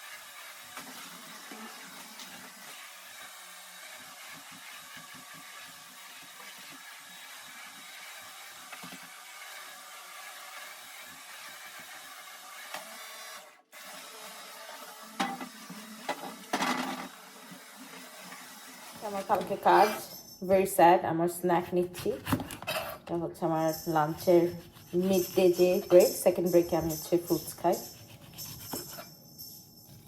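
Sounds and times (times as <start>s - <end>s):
vacuum cleaner running: 0.0s - 20.1s.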